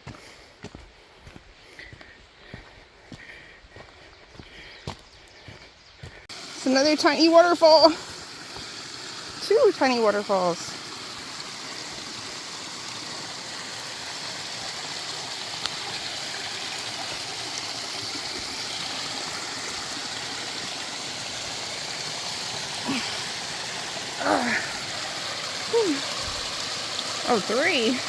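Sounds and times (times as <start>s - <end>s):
water rushing over small falls: 6.3s - 28.0s.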